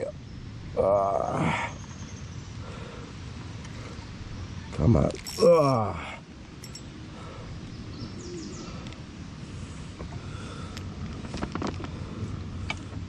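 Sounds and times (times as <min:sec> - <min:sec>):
faint bird chirps: 0:00.1 - 0:03.0, 0:07.3 - 0:08.9.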